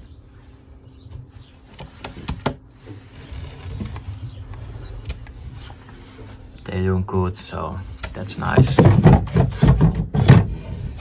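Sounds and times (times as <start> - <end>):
low rumbling noise: 2.7 - 11.0
pigeons clicking and scuffling: 7.8 - 11.0.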